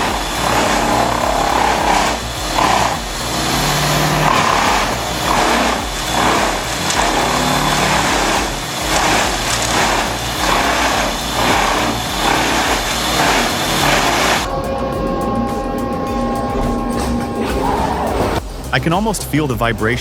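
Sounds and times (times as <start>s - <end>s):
wood chipper grinding: 0.0s - 14.5s.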